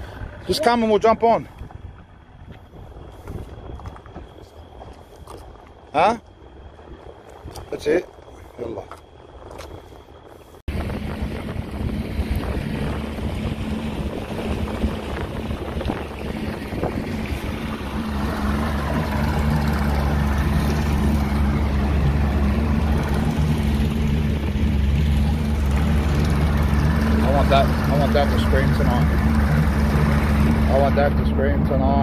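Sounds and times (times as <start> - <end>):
motorboat engine running: 0.0 - 32.0
wind and water rushing: 9.3 - 32.0.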